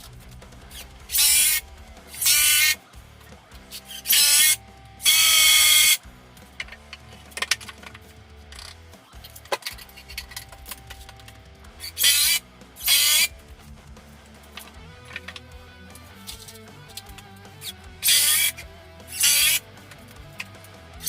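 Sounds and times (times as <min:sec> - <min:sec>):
background music: 0:00.0 - 0:21.0
power drill running: 0:02.2 - 0:02.8, 0:03.9 - 0:06.0, 0:11.8 - 0:13.3, 0:18.0 - 0:19.6.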